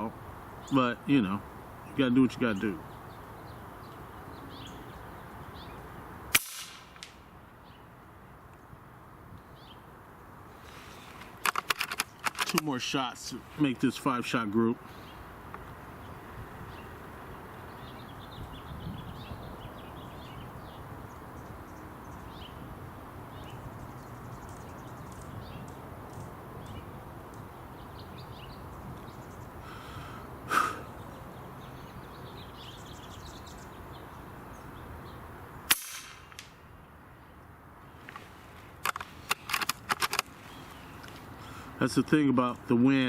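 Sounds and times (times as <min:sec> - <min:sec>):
air rifle shots: 0:06.3 - 0:07.2, 0:35.7 - 0:36.6
wind noise on microphone: 0:15.6 - 0:30.2.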